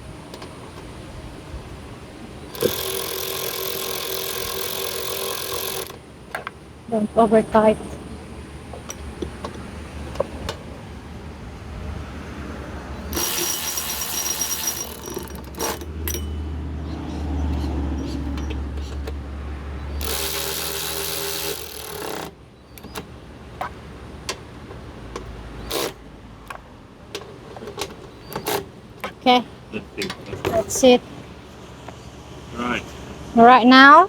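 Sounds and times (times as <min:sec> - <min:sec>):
power driver driving bolts: 0:02.5 - 0:06.6, 0:13.1 - 0:16.5, 0:20.0 - 0:29.4
clicks and clinks of tools: 0:13.1 - 0:16.5.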